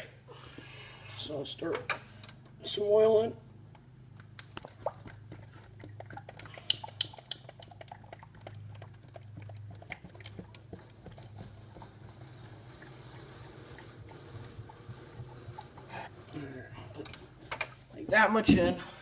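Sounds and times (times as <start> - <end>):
glugs of air bubbles: 4.2 - 17.9.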